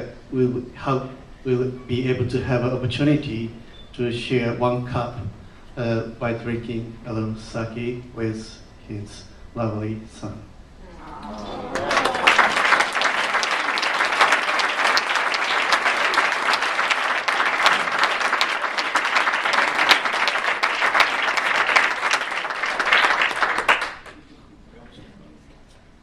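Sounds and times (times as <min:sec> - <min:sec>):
audience applauding: 0:11.0 - 0:24.2.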